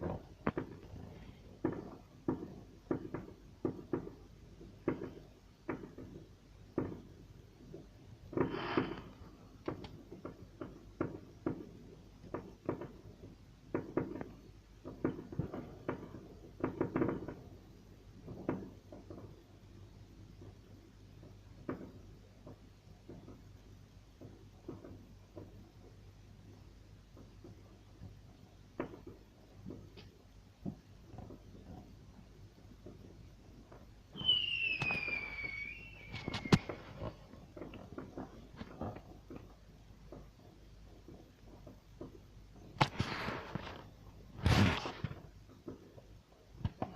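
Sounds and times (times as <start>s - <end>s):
firework bangs: 0.0s - 19.5s, 27.2s - 46.9s
crackling pops: 0.0s - 46.9s
firework whistle falling in pitch: 34.1s - 37.1s.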